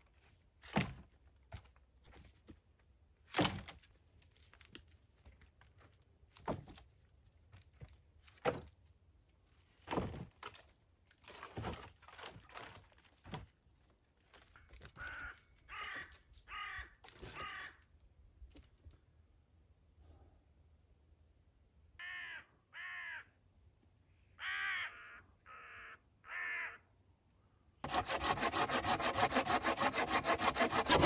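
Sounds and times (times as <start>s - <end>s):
crow cawing: 15.0s - 17.8s, 22.0s - 23.4s, 24.4s - 26.8s
scraping rustling bursts: 27.9s - 31.0s.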